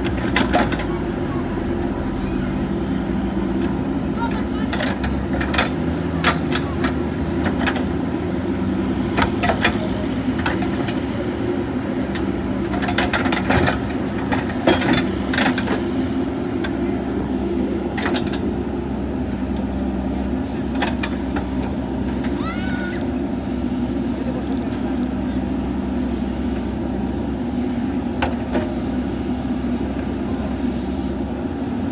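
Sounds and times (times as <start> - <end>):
diesel engine running: 0.0 - 31.9.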